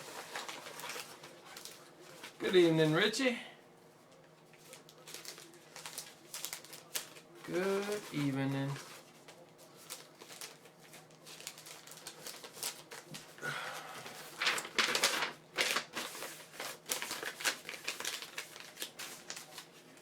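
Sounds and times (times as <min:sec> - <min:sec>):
crinkling card packaging: 0:00.0 - 0:03.2, 0:04.2 - 0:20.0.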